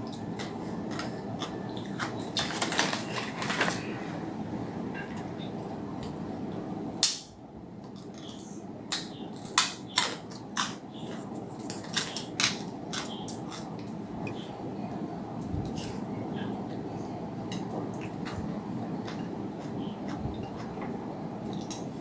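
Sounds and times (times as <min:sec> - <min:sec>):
eating clicks and crunches: 0:00.0 - 0:04.0, 0:07.9 - 0:14.5, 0:17.5 - 0:22.0
low background noise: 0:00.0 - 0:22.0.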